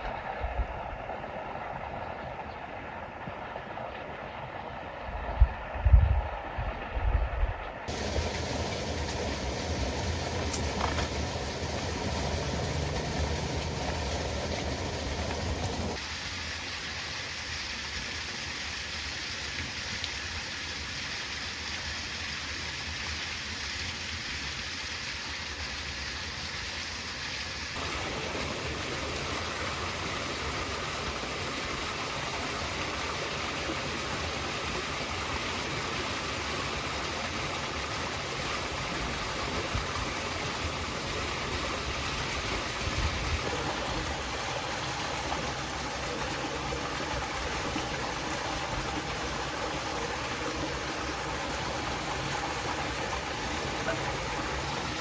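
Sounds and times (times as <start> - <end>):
stream water rushing: 7.9 - 55.0.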